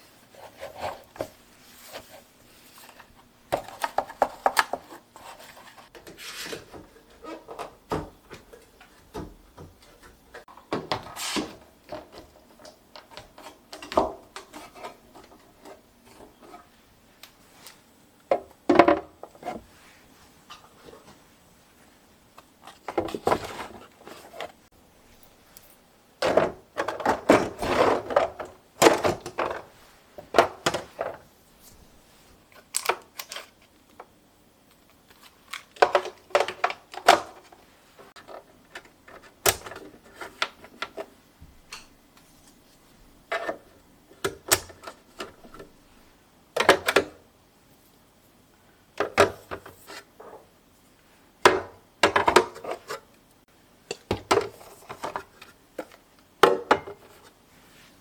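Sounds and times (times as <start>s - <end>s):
household items clicking and clattering: 26.2s - 31.2s.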